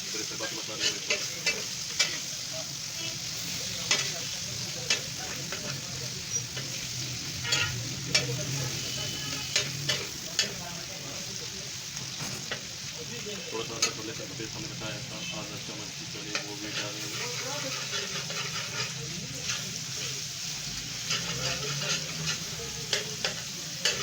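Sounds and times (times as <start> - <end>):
chicken sizzling in a pan: 0.0 - 24.0
utensil clicking against pan: 0.8 - 2.3, 3.8 - 8.5, 9.5 - 10.6, 21.0 - 24.0.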